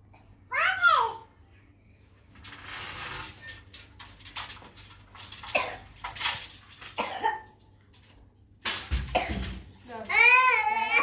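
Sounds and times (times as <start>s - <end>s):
person coughing: 7.0s - 7.5s.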